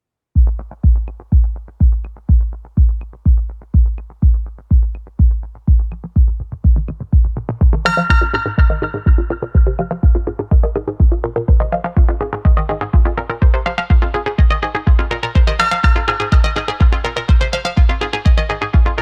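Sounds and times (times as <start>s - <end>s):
electronic dance music: 0.4s - 19.0s
heavy kick drum: 0.4s - 19.0s
bright synth layer: 7.9s - 10.4s.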